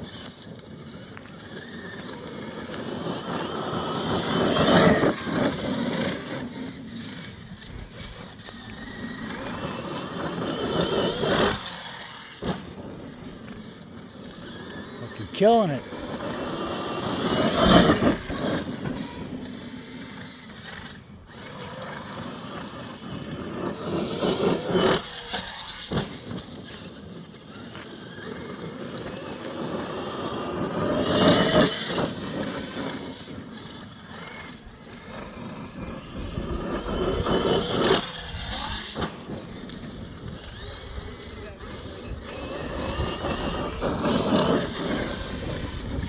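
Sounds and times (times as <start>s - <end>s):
electric motor whine: 0.0s - 46.0s
tyres on dirt: 0.0s - 46.0s.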